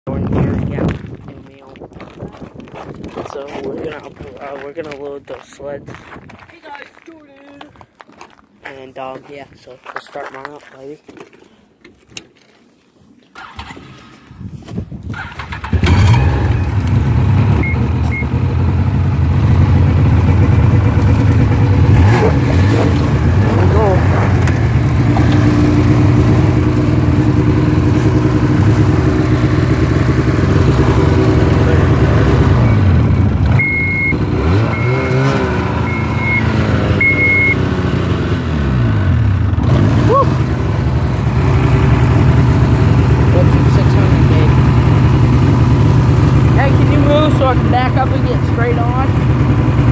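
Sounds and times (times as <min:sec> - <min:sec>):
snowmobile engine cranking and running: 0:15.1 - 0:49.9
reverse warning beeper: 0:17.6 - 0:18.4, 0:32.5 - 0:37.6.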